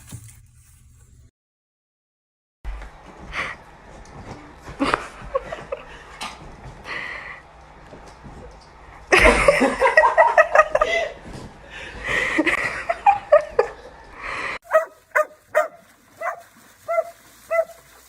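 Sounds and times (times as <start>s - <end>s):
dog barking and yipping: 14.7s - 18.0s.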